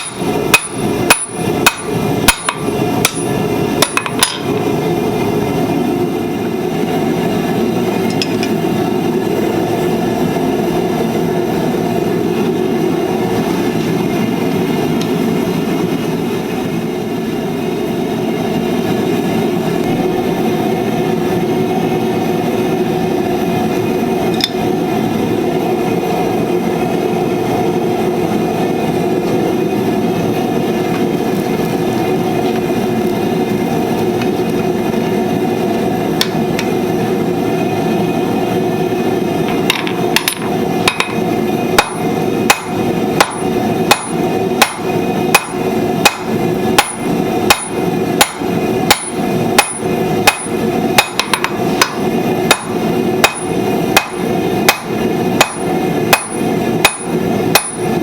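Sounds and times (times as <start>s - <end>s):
hammer striking steel on anvil: 0.0s - 4.6s, 39.5s - 41.2s, 41.8s - 58.0s.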